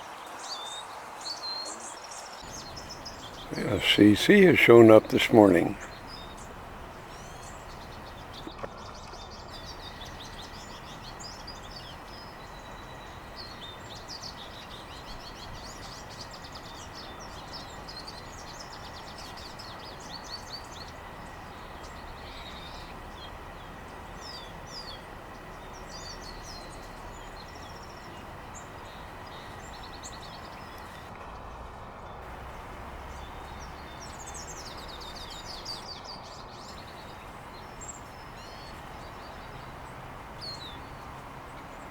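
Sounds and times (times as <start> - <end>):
songbirds chirping and trilling: 1.4 - 31.2, 32.1 - 41.9
steady background hum: 2.5 - 8.5, 9.6 - 31.2, 32.2 - 41.9.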